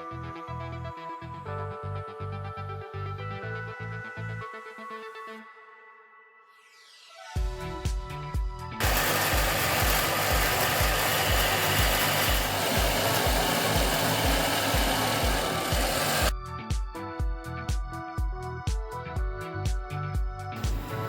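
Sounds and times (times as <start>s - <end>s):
electronic music with steady beat: 7.0s - 19.4s, 20.2s - 21.0s.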